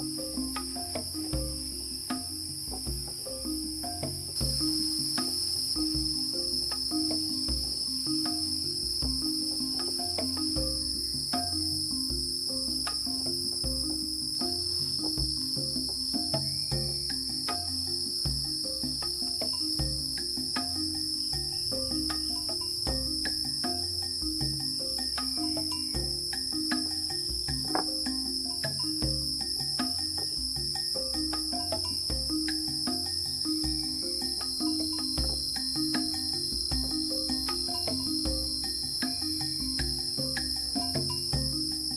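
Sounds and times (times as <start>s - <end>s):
night insects chorus: 0.0s - 41.9s.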